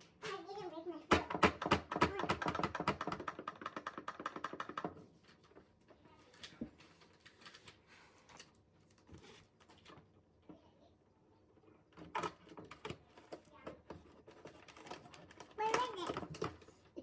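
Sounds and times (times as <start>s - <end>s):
plastic toy pieces clicking: 1.4s - 5.0s, 14.4s - 16.7s.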